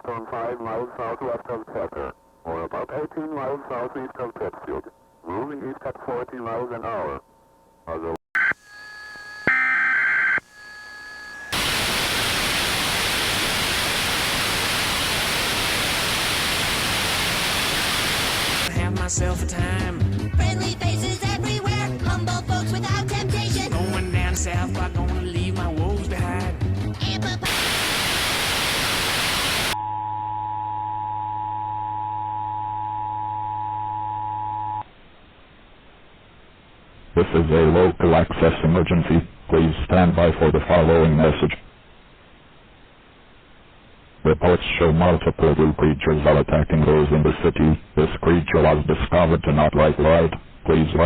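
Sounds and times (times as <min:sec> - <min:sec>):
white-noise static: 0:00.0 - 0:07.2, 0:07.9 - 0:08.6, 0:11.1 - 0:18.8, 0:27.2 - 0:29.8, 0:34.8 - 0:51.0
electronic warning broadcast: 0:07.9 - 0:18.7, 0:27.5 - 0:29.8
steady electronic tones: 0:08.4 - 0:18.7.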